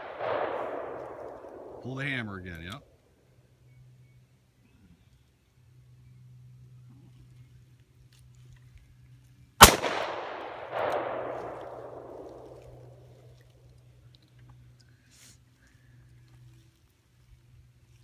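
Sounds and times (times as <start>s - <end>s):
revolver shot: 9.6s - 11.3s.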